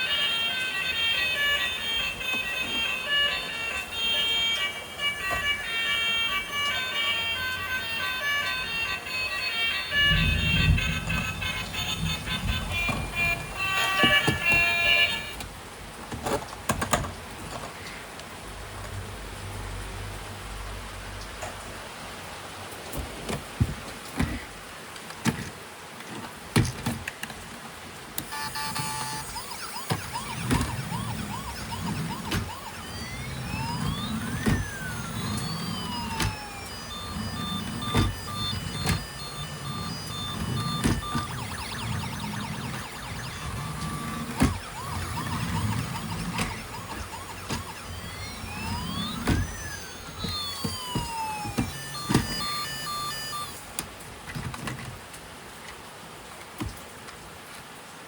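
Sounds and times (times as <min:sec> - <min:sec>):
toy electronic siren wailing: 0:00.0 - 0:15.4, 0:28.2 - 0:53.8
short repeated beeps: 0:28.3 - 0:53.6.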